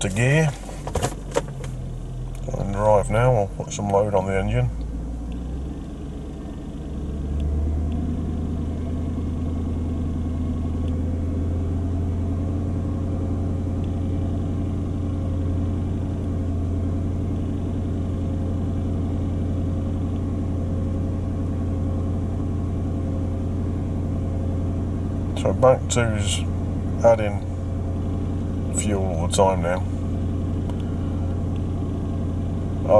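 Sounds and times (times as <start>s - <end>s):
car engine idling: 0.0s - 32.9s.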